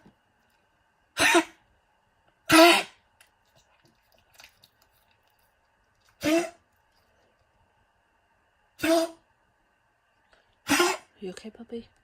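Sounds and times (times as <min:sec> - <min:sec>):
dog coughing: 0:01.2 - 0:01.6, 0:02.5 - 0:03.0, 0:06.2 - 0:06.6, 0:10.6 - 0:11.1.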